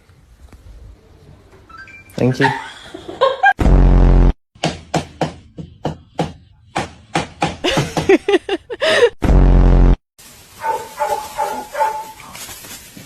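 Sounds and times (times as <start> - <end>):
loud buzzing tone: 3.6 - 4.4, 9.2 - 10.0
knocks and taps like hammering: 4.6 - 8.2.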